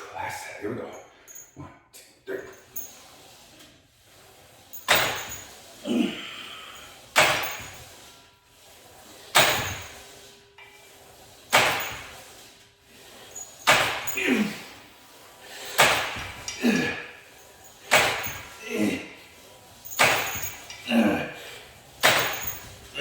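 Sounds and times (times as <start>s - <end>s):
weight stack clanking: 4.8s - 8.1s, 9.3s - 10.1s, 11.5s - 12.3s, 13.4s - 14.8s, 15.6s - 23.0s.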